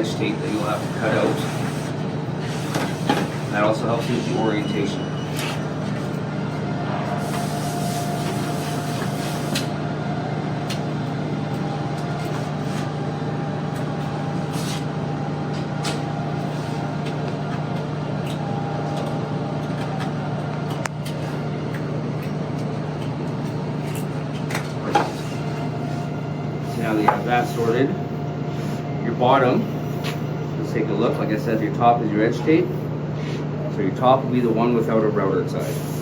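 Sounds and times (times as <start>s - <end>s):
mechanical hum: 0.0s - 36.0s.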